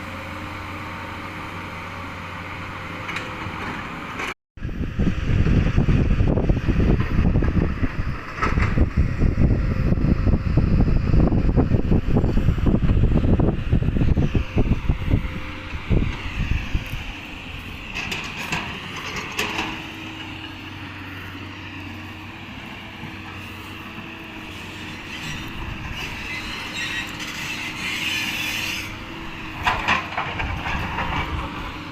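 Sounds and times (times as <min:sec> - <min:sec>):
backhoe diesel engine running: 0:00.0 - 0:31.9
bucket clanking and scraping: 0:29.6 - 0:31.6.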